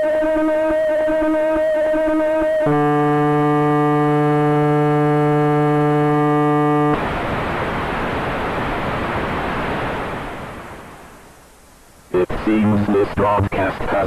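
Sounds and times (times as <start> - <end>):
electronic buzzing tone: 0.0 - 8.8
loud static hiss: 2.6 - 14.0.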